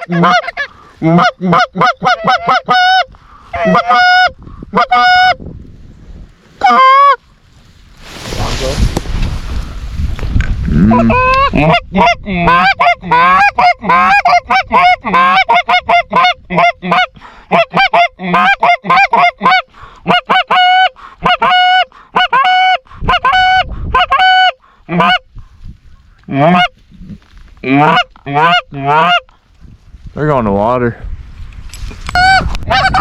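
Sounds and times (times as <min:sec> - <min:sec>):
goose honking and clucking: 0:00.0 - 0:05.4, 0:06.6 - 0:07.2, 0:10.7 - 0:25.3, 0:26.3 - 0:26.8, 0:27.6 - 0:29.3, 0:32.1 - 0:33.0.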